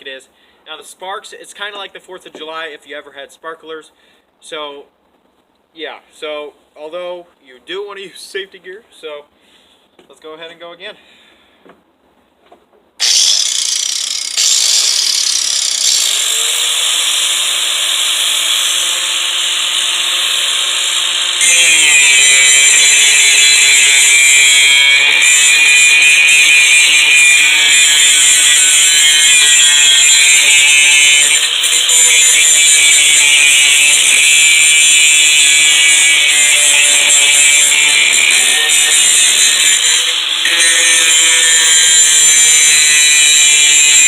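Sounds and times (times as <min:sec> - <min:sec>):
angle grinder grinding metal: 0:13.0 - 0:44.0.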